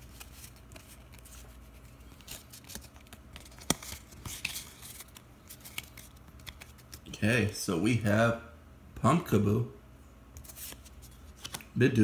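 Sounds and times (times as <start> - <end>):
cards and wrapper rustling: 0.0 - 7.2.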